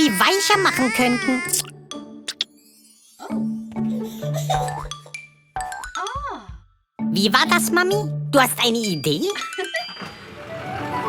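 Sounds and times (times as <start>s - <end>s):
cartoon music with low notes: 3.2s - 10.0s.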